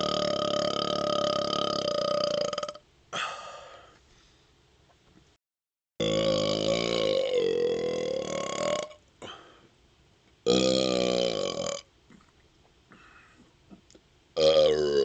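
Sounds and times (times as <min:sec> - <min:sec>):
man burping: 0:00.0 - 0:03.7, 0:06.0 - 0:09.5, 0:10.5 - 0:12.3, 0:14.4 - 0:15.0.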